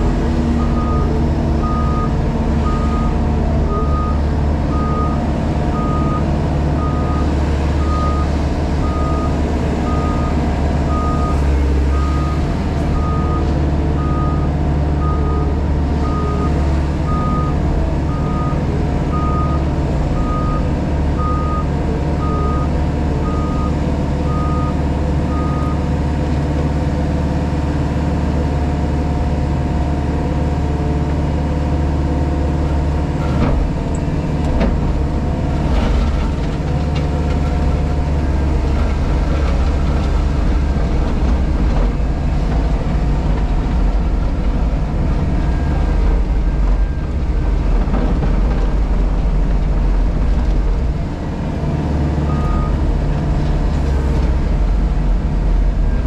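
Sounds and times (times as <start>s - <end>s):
diesel engine running: 0.0s - 56.0s
reversing alarm beeping: 14.0s - 25.8s.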